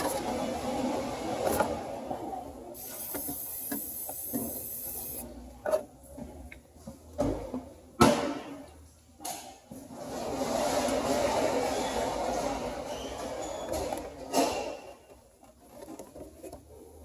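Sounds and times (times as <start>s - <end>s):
aerosol spray hiss: 2.8s - 5.2s.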